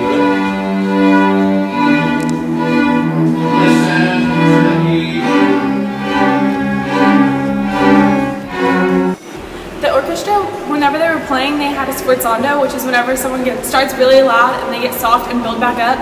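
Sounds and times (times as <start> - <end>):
string ensemble playing chords: 0.0 - 10.0.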